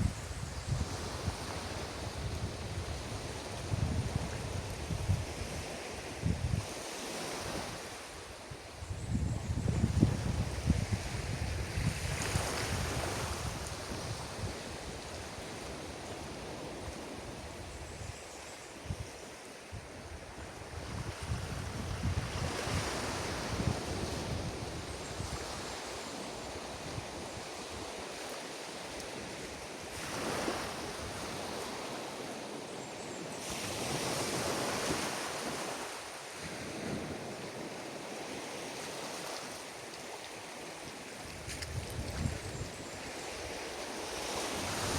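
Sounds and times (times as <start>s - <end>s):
wind buffeting microphone: 0.0s - 6.7s, 8.8s - 14.6s, 41.4s - 42.9s
ocean waves breaking on beach: 0.0s - 8.9s, 9.5s - 44.9s.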